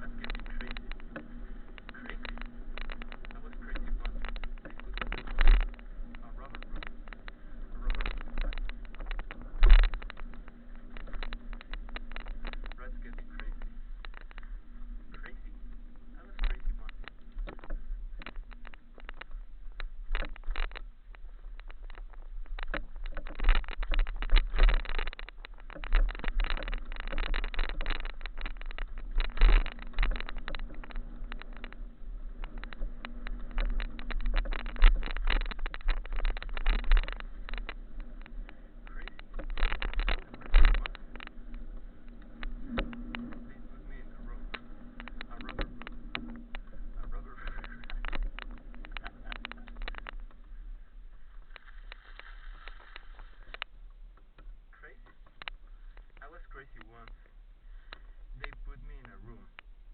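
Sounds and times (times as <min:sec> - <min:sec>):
wind buffeting microphone: 0:00.0 - 0:56.8
bike rattling and jolting: 0:00.0 - 0:59.9.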